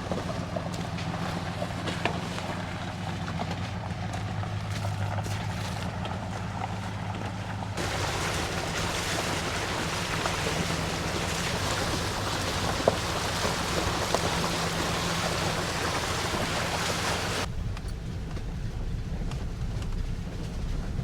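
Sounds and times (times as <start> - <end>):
low engine drone: 0.0 - 21.0
tyre and wind rushing: 7.8 - 21.0.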